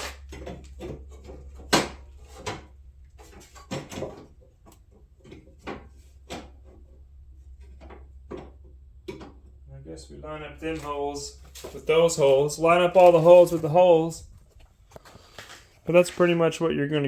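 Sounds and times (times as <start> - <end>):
low steady hum: 0.0 - 17.0
plastic clacks and knocks: 0.2 - 7.0, 7.6 - 9.5.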